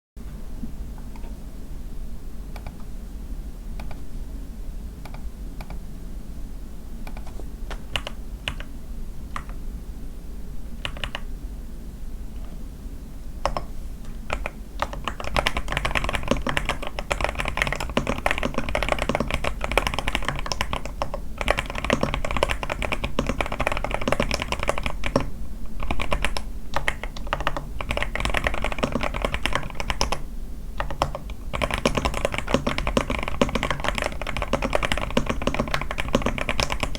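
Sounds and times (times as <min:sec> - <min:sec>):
mechanical keyboard typing: 0:07.1 - 0:08.7, 0:10.8 - 0:11.2, 0:13.4 - 0:30.2, 0:30.8 - 0:36.9.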